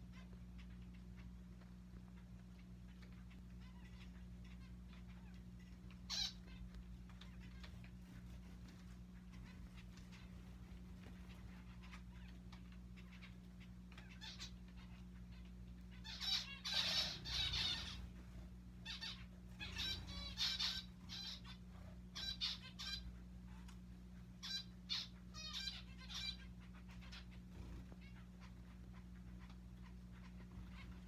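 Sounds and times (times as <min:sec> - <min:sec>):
finches beeping calls: 0:02.6 - 0:31.0.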